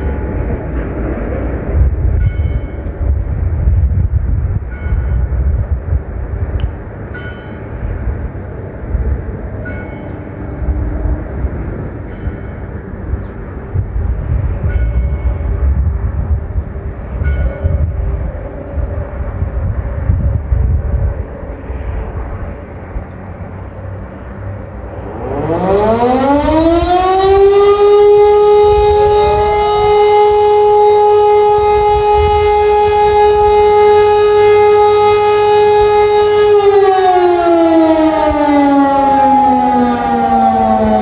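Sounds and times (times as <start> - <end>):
siren howling: 0.0 - 22.9, 23.6 - 41.0
low rumble: 10.4 - 29.9
second higher siren tone: 24.7 - 41.0.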